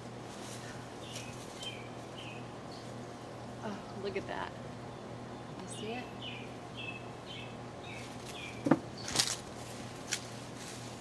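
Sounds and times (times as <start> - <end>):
rustle of soil: 0.0 - 3.4, 7.9 - 11.0
bird chirping: 1.0 - 3.0, 4.8 - 9.2.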